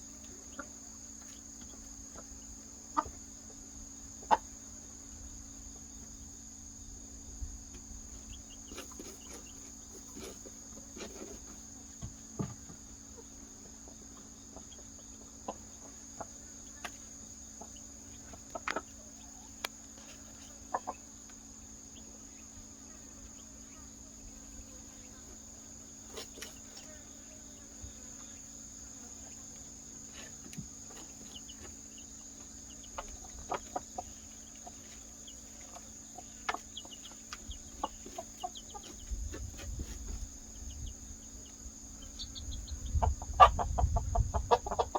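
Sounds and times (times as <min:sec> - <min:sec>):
crickets humming: 0:00.0 - 0:44.9
chicks peeping: 0:00.2 - 0:03.6, 0:07.8 - 0:11.6, 0:13.1 - 0:22.6, 0:29.2 - 0:44.9
hen clucking: 0:02.1 - 0:03.2, 0:04.2 - 0:04.5, 0:17.6 - 0:19.7, 0:20.5 - 0:21.2, 0:30.9 - 0:40.0, 0:41.4 - 0:44.9.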